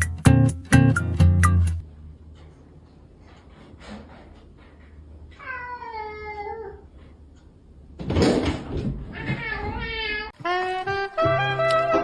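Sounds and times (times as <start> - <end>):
cat meowing: 5.4 - 6.9.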